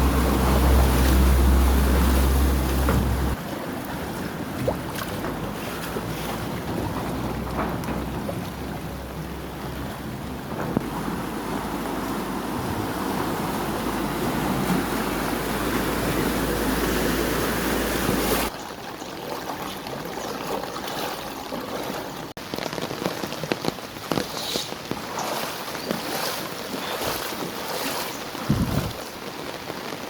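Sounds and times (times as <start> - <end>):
rain and floodwater: 0.0 - 30.0
patter of drops and splashes: 19.7 - 30.0
wind rumble on microphone: 28.2 - 30.0.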